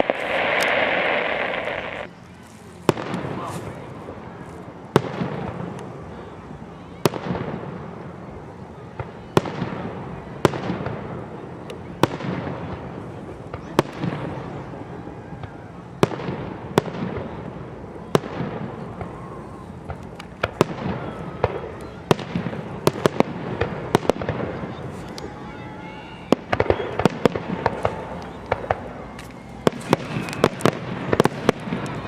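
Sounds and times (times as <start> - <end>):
fireworks bangs with echo: 0.0 - 2.1, 2.8 - 4.2, 4.9 - 5.8, 7.0 - 8.2, 8.8 - 32.0.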